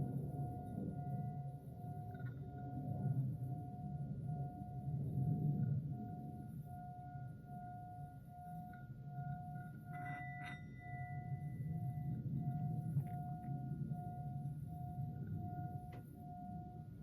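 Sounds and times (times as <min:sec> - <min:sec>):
pulsing ringing tone: 0:00.0 - 0:17.0
bright chime: 0:06.0 - 0:17.0.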